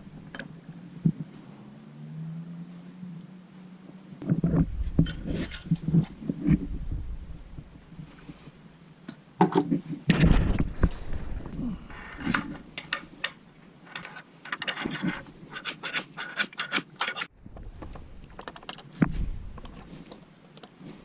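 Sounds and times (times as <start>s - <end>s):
bicycle parts and tools clicking: 11.9s - 17.3s.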